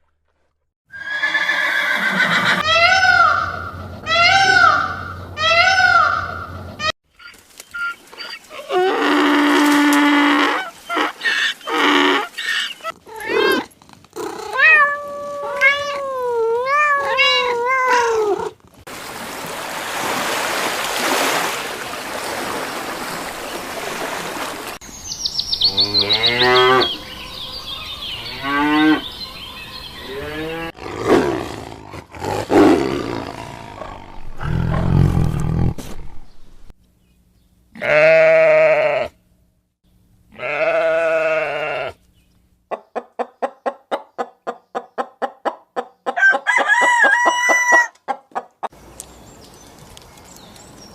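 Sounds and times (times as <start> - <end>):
animal calls: 1.0 - 18.5.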